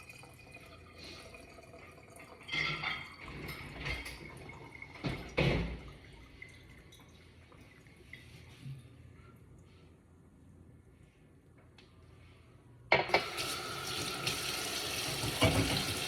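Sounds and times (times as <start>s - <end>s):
water splashing in a sink: 13.2s - 16.0s
knocks in a sink: 15.2s - 16.0s.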